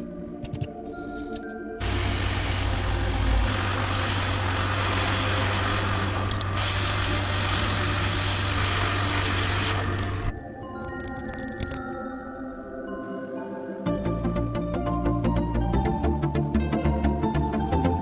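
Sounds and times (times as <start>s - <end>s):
small electric tool running: 1.8s - 10.4s.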